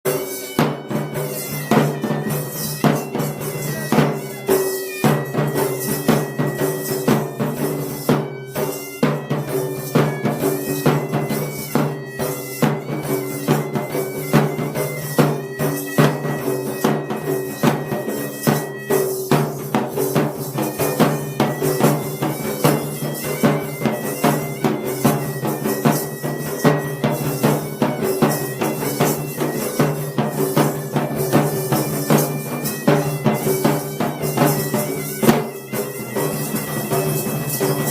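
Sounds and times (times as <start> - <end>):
shrill reed pipe melody: 0.1 - 37.9.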